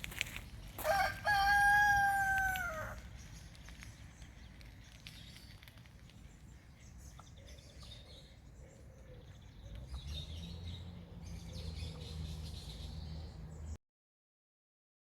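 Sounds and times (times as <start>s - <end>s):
small birds chirping: 2.5s - 13.8s.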